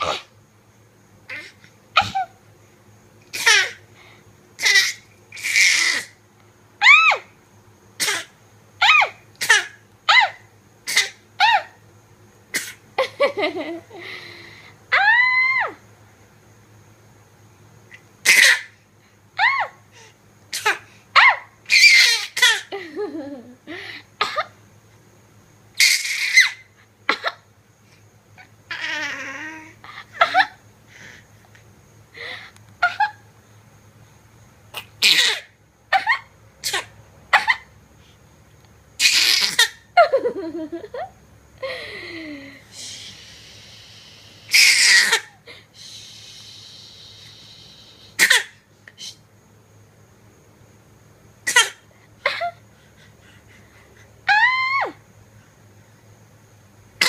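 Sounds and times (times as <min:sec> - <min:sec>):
baby playful coughing sounds: 0:00.0 - 0:00.3, 0:03.3 - 0:03.8, 0:08.0 - 0:08.3, 0:09.4 - 0:09.8, 0:10.9 - 0:11.2, 0:12.5 - 0:12.8, 0:18.2 - 0:18.7, 0:20.5 - 0:20.8, 0:24.2 - 0:24.5, 0:34.7 - 0:35.5, 0:48.2 - 0:48.6, 0:51.4 - 0:51.8
baby laughing squeaks: 0:01.3 - 0:02.3, 0:04.6 - 0:06.1, 0:20.6 - 0:22.7, 0:25.8 - 0:26.6, 0:39.0 - 0:39.9, 0:44.5 - 0:45.4
baby high squeal: 0:21.2 - 0:22.3, 0:25.8 - 0:26.6, 0:44.5 - 0:45.3.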